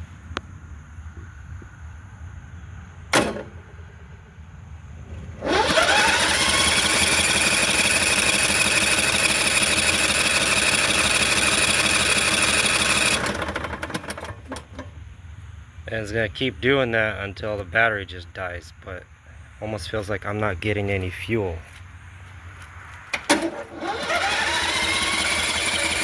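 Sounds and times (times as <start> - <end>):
electric starter cranking engine: 5.4 - 14.9, 23.2 - 26.0.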